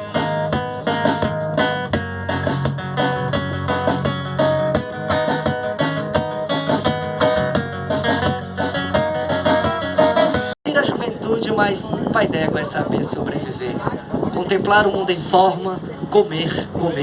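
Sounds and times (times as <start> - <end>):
plucked guitar melody: 0.0 - 10.6
steady bass line: 0.0 - 10.6.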